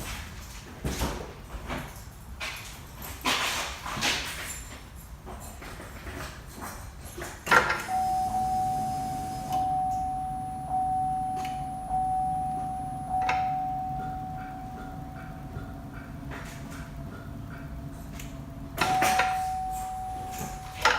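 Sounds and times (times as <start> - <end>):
dashboard warning chime dinging: 7.8 - 20.9.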